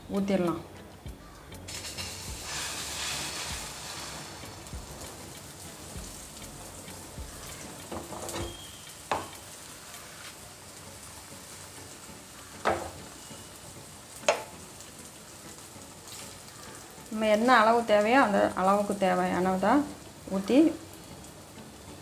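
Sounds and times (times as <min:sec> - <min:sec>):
batter sizzling in hot oil: 0:00.0 - 0:22.0.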